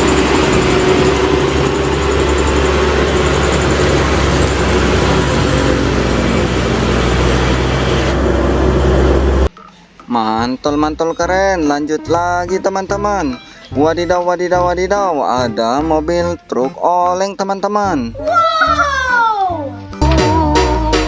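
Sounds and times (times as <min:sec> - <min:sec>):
vehicle engine and road noise: 0:00.0 - 0:09.5.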